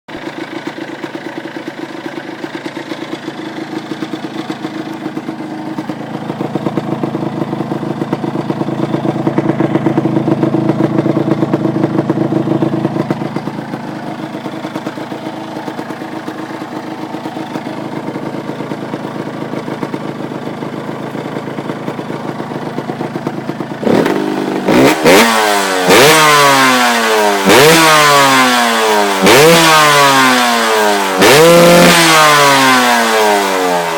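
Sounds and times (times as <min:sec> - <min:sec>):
two-stroke engine idling: 0:00.1 - 0:33.9
engine revving sharply: 0:23.8 - 0:33.9.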